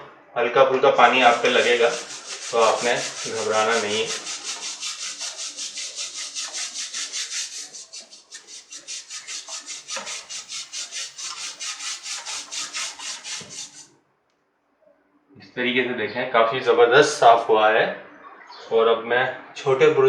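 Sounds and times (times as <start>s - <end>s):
stiff brush scrubbing wet blades: 1.0s - 13.9s.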